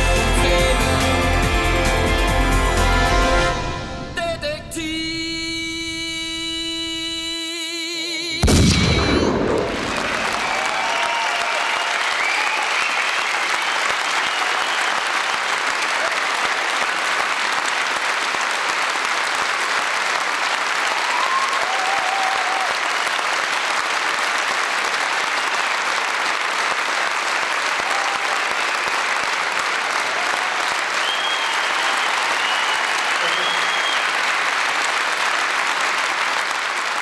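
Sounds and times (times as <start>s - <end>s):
audience applauding: 0.0s - 4.1s, 9.8s - 37.0s
faint cheers and whistles: 8.9s - 15.4s, 21.0s - 23.2s, 30.2s - 34.3s.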